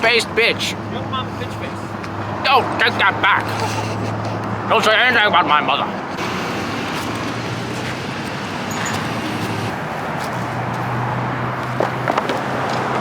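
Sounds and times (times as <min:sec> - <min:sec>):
road traffic passing: 0:00.0 - 0:13.0
low engine hum: 0:06.0 - 0:13.0.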